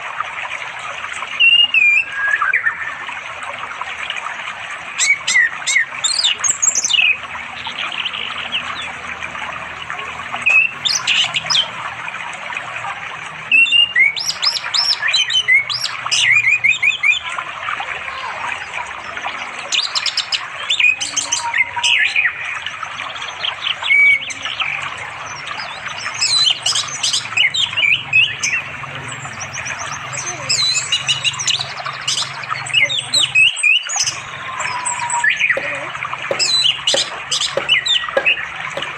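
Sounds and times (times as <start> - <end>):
stream water flowing: 0.0 - 38.9
bird singing chirps and whistles: 1.4 - 3.0, 5.0 - 8.9, 13.5 - 17.3, 19.3 - 38.9.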